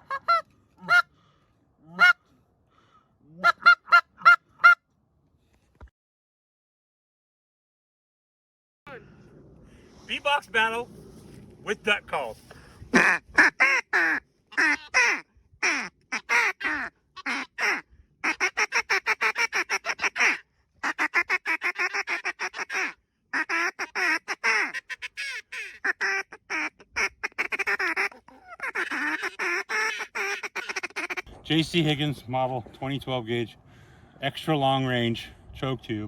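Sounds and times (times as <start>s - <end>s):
duck calls quacking: 0.0s - 1.1s, 1.9s - 2.2s, 3.4s - 4.8s, 13.0s - 31.3s.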